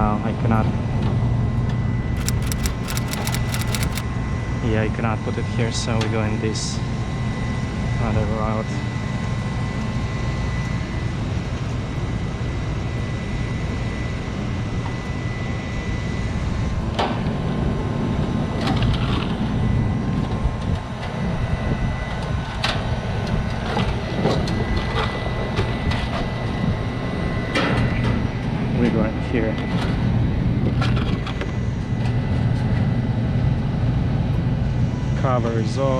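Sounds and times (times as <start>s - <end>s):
metal parts clicking: 2.2s - 4.0s.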